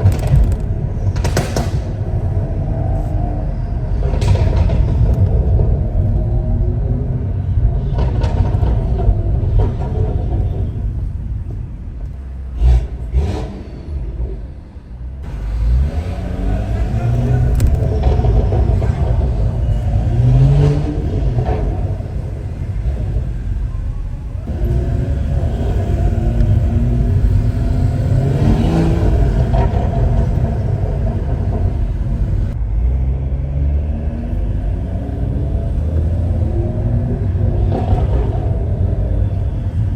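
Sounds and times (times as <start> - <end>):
sharp exhaust pops: 0.0 - 2.3
car engine accelerating: 0.0 - 39.9.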